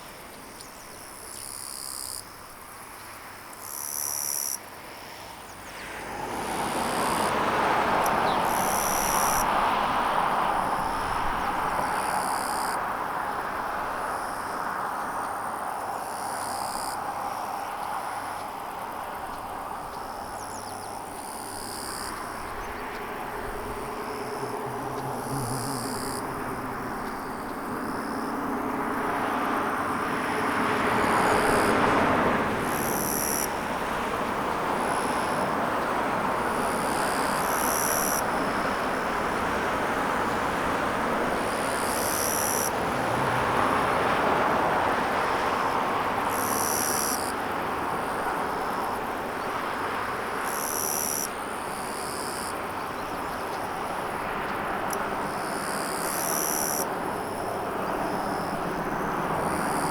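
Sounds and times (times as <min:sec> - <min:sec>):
insects chirping: 0:00.0 - 0:59.9
passing road traffic: 0:00.0 - 0:59.9
low engine hum: 0:22.2 - 0:32.7.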